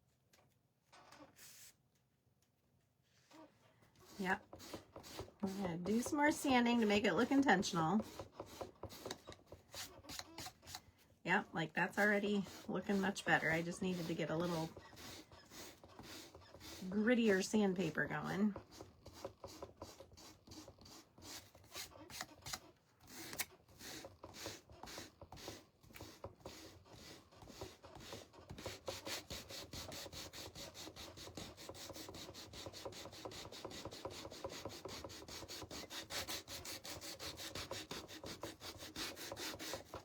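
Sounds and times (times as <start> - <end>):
sandpaper scrubbing wood: 12.0 - 17.4, 23.1 - 40.0.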